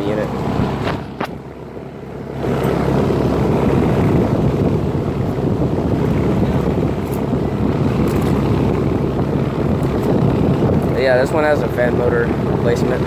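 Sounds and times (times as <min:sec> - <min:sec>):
air conditioner fan rushing air: 0:00.0 - 0:13.0.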